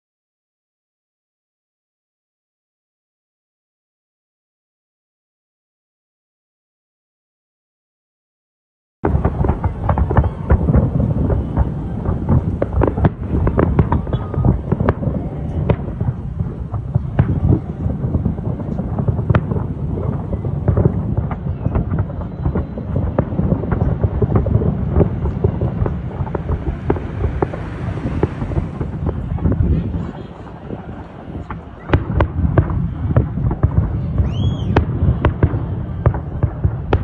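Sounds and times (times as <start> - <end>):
fireworks booming and cracking: 9.0 - 37.0
low rumble: 9.0 - 37.0.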